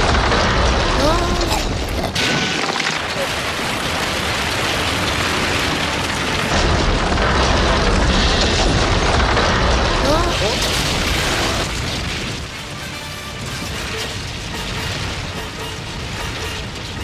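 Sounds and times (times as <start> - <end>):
rock crashing and crumbling: 0.0 - 12.6
heavy deep rumble: 0.0 - 17.0.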